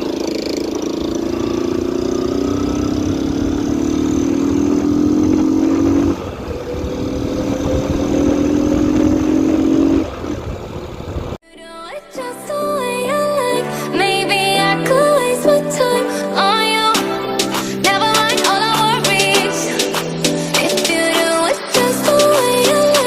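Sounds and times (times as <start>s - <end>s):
motorcycle engine revving: 0.0s - 11.4s.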